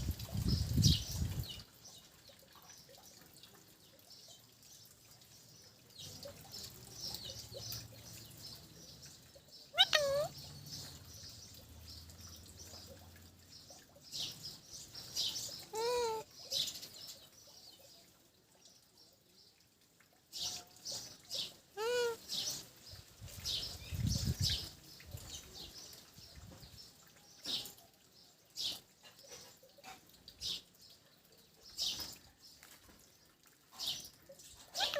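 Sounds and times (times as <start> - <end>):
parakeet chirping: 9.7 - 10.4, 15.7 - 16.2, 21.8 - 22.2
parakeet squawking: 9.7 - 10.4, 15.7 - 16.3, 21.8 - 22.2.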